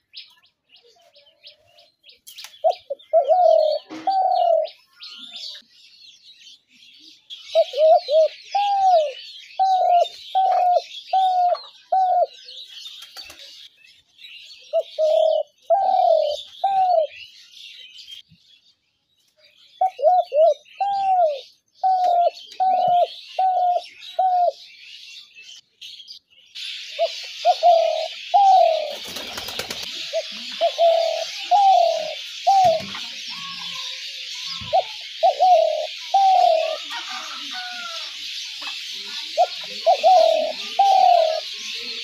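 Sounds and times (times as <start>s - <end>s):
small birds chirping: 0.0s - 42.0s
dove cooing: 2.6s - 4.8s, 7.5s - 12.6s, 14.7s - 17.2s, 19.8s - 24.6s, 26.9s - 38.0s, 39.2s - 42.0s.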